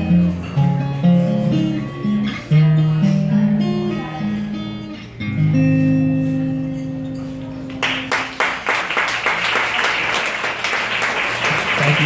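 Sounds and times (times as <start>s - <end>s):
audience applause: 7.8s - 12.0s.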